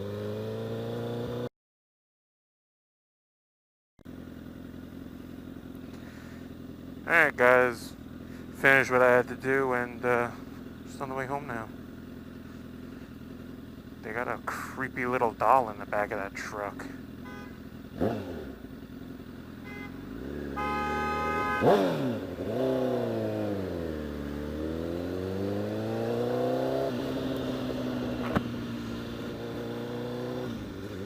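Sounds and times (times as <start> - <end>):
motorcycle engine revving: 0.0 - 1.5, 4.1 - 31.0
vehicle horn: 17.1 - 17.8, 19.5 - 22.6.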